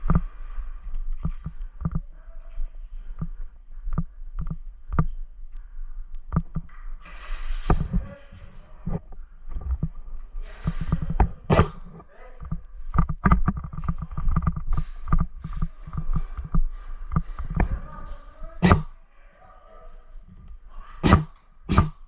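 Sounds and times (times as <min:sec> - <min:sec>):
faint voices: 0:07.7 - 0:09.9, 0:15.4 - 0:21.9.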